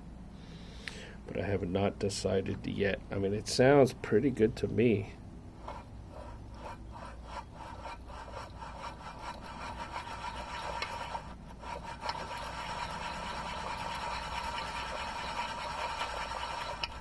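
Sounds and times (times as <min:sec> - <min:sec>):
crankshaft whirring in bearings: 0:05.5 - 0:17.0.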